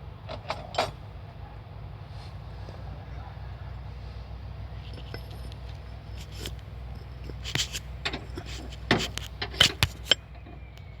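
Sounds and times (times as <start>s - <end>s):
steady low hum: 0.0s - 10.9s
short scrapes: 4.2s - 10.2s.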